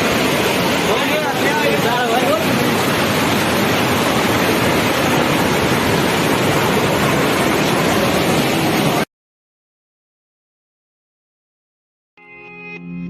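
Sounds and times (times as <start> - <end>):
waterfall roaring: 0.0 - 9.1.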